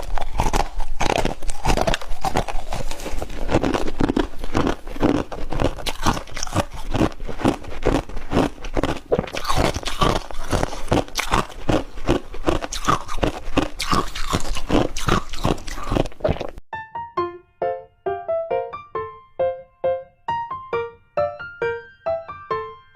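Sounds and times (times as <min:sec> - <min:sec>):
crunching and chewing frost: 0:00.0 - 0:16.6.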